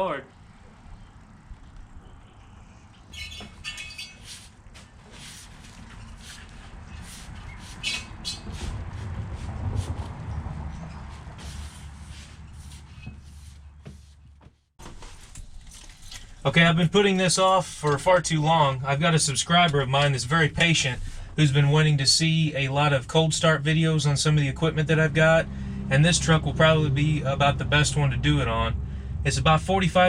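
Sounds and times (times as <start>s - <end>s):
rubber tire squeaking and scraping: 1.0s - 16.1s
low rumble: 24.8s - 30.0s.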